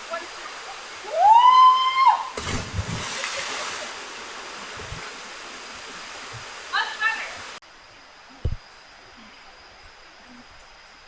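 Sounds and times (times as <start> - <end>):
waterfall rushing: 0.0 - 7.6
brief splash: 2.3 - 5.3.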